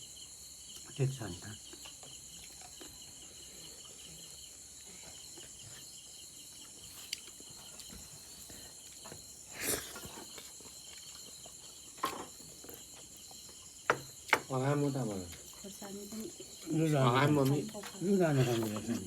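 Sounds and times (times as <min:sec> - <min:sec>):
crickets chirping: 0:00.0 - 0:19.0.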